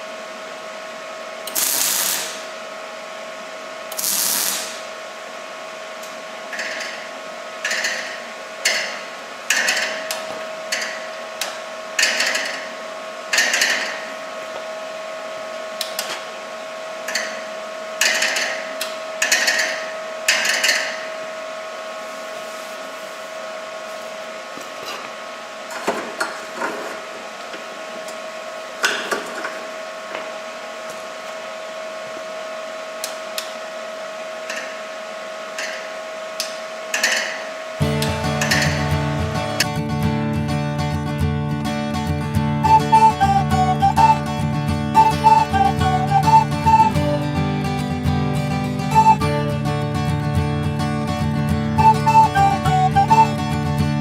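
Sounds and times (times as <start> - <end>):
steady electrical hum: 0.0 - 54.0
sharp metalworking bursts: 1.5 - 2.5, 3.9 - 4.9.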